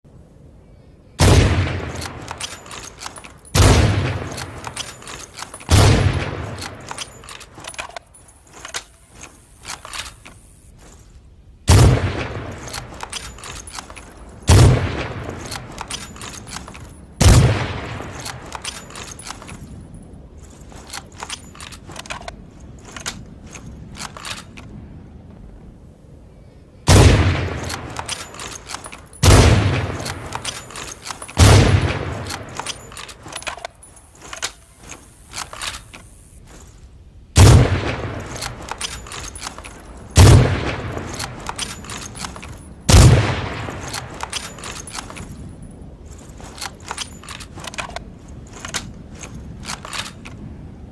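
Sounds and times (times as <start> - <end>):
rifle shots: 1.2 - 8.0, 11.7 - 19.6, 26.9 - 33.6, 37.4 - 45.4.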